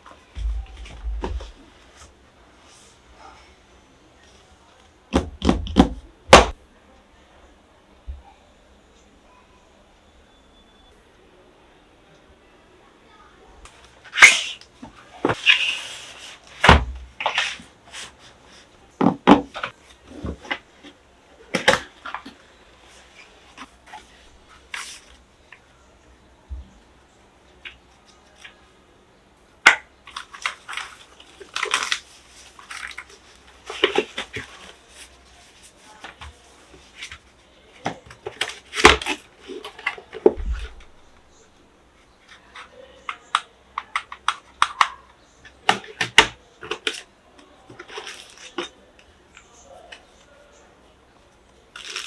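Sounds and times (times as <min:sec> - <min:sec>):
low thud: 0:00.4 - 0:01.6
box and packaging knocks and thuds: 0:00.4 - 0:01.7, 0:05.2 - 0:06.6, 0:19.0 - 0:19.6
packaging clicks and rustles: 0:29.7 - 0:41.4, 0:42.2 - 0:50.2, 0:51.6 - 0:52.0.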